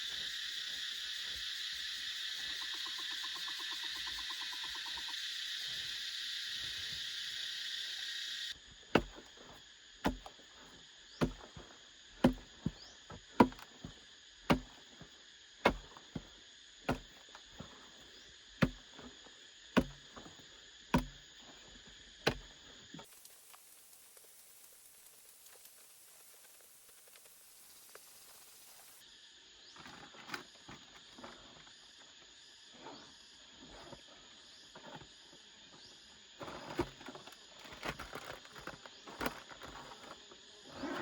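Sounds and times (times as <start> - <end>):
forest insects buzzing: 0.0 - 41.0
hand tool striking: 9.0 - 9.3, 10.0 - 10.3, 11.2 - 11.6, 12.2 - 12.8, 13.4 - 13.7, 14.5 - 14.7, 15.6 - 16.0, 16.9 - 17.1, 18.6 - 18.8, 19.8 - 20.0, 20.9 - 21.2, 22.2 - 22.5.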